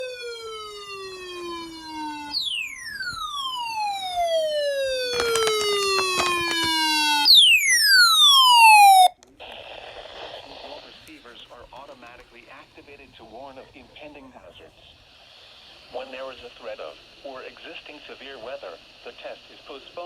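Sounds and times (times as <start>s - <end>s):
crackling clicks: 5.0s - 6.9s.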